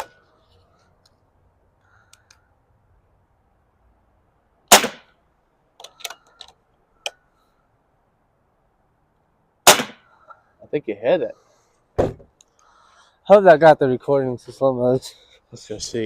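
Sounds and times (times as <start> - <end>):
air rifle shot: 4.7 - 5.1, 9.6 - 10.1.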